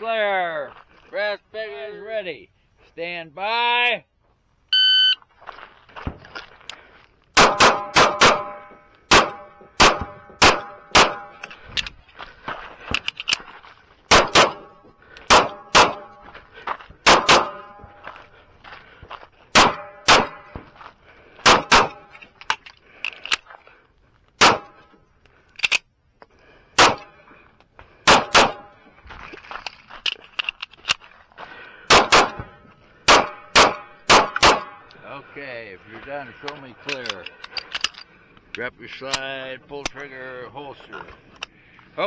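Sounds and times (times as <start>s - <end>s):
pistol shots in quick pairs: 7.4s - 11.4s, 14.1s - 14.7s, 15.3s - 16.1s, 17.0s - 17.8s, 19.5s - 20.6s, 21.4s - 22.0s, 24.4s - 24.8s, 26.8s - 27.1s, 28.1s - 28.7s, 31.9s - 32.5s, 33.1s - 34.8s.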